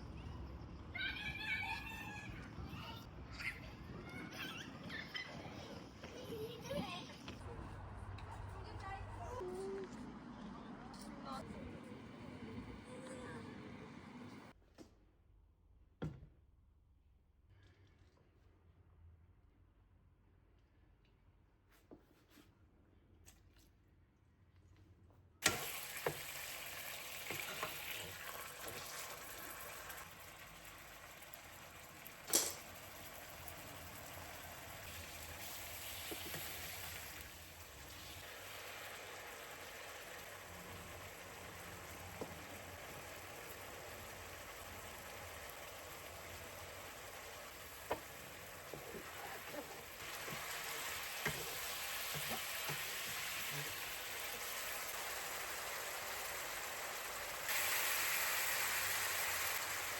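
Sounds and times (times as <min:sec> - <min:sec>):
food sizzling in a frying pan: 0:25.4 - 0:59.9.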